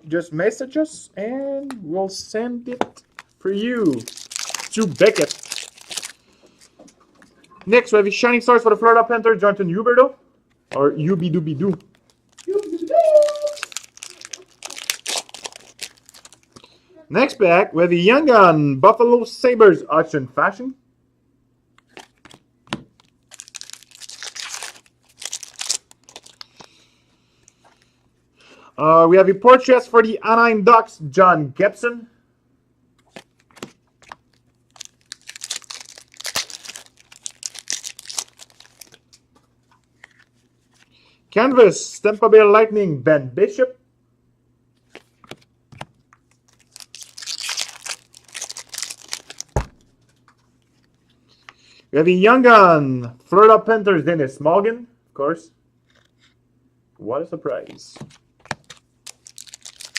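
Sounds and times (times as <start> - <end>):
foil wrapper tearing and crinkling: 3.0 - 6.2, 11.9 - 16.6, 23.0 - 26.5, 33.1 - 39.2, 46.2 - 49.8, 58.4 - 59.9.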